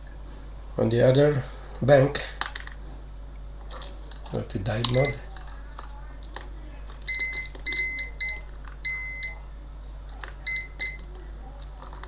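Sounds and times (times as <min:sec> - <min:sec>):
multimeter beeping: 0:04.4 - 0:05.4, 0:07.0 - 0:11.2.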